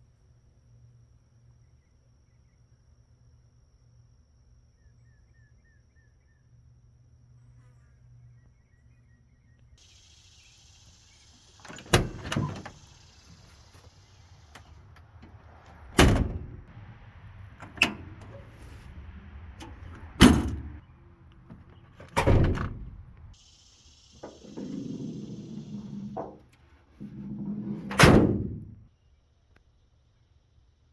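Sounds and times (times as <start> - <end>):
pickup truck doors slamming: 11.5 - 13.8, 14.4 - 20.8, 21.4 - 23.4, 24.2 - 28.8.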